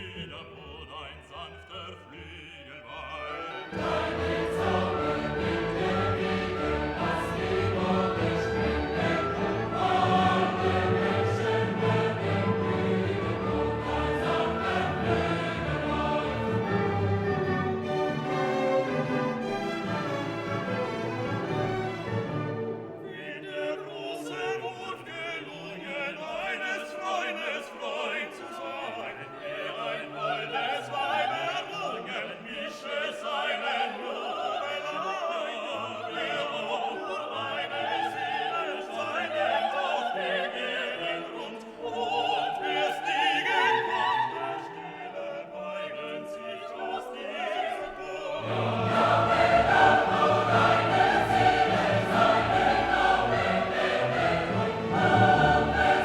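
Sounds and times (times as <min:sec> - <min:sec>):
choir singing: 0:00.0 - 0:56.0
operatic singing: 0:00.0 - 0:56.0
orchestra playing: 0:03.0 - 0:23.4, 0:48.2 - 0:56.0.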